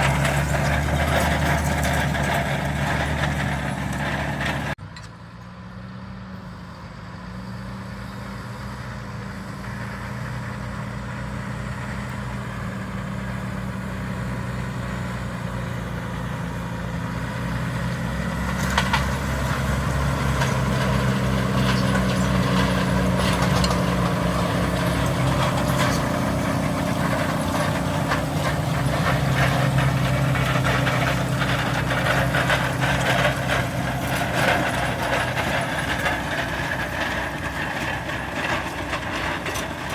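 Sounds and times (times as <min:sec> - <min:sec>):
crackles and rattles: 0:00.0 - 0:04.8, 0:17.2 - 0:39.9
tractor diesel engine: 0:00.0 - 0:39.9.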